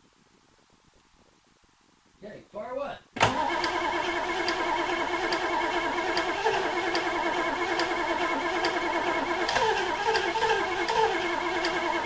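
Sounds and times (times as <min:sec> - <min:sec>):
engine running: 0:03.3 - 0:12.0.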